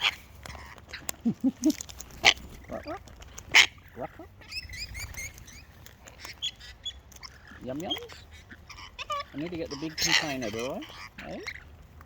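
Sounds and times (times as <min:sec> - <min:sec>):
bird low falling calls: 0:01.0 - 0:11.7
bird harsh screeches: 0:02.2 - 0:11.7
bird high chirps: 0:03.6 - 0:11.6.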